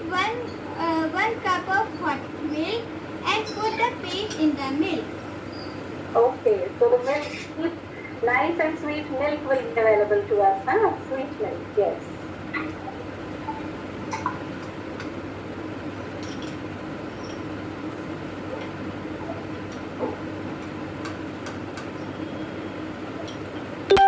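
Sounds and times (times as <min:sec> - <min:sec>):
background hum: 0:00.0 - 0:24.0.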